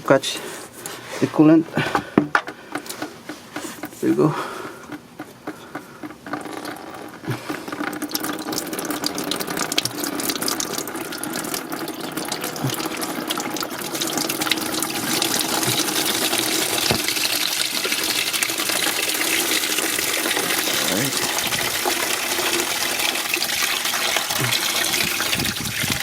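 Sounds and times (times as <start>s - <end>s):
liquid dripping: 3.8s - 26.0s
coolant pouring into a pan: 5.6s - 26.0s.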